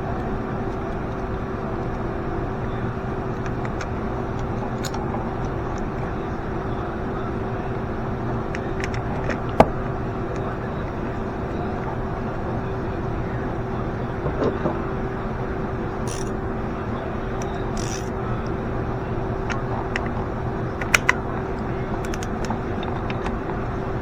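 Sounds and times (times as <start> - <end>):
engine-like running hum: 0.0 - 24.0
sharp clicks: 16.1 - 16.4, 17.4 - 18.6, 20.8 - 23.6.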